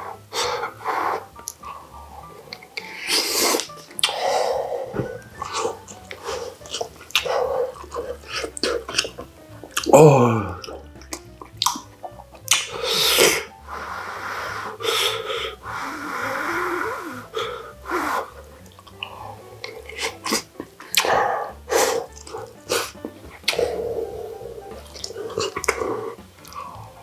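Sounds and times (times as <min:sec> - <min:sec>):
breathy exhales: 0:00.0 - 0:09.0, 0:12.7 - 0:20.2, 0:20.9 - 0:27.0
chewing and slurping: 0:05.4 - 0:09.9.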